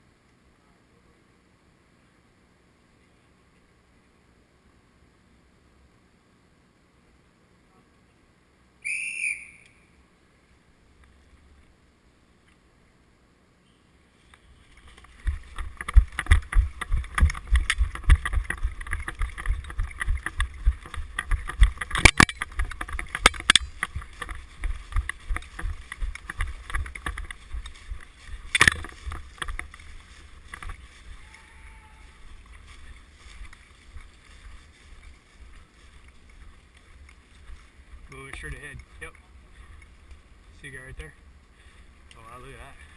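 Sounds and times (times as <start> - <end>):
sharp clicks: 14.3 - 31.4
camera handling thumps and rustling: 15.0 - 30.8.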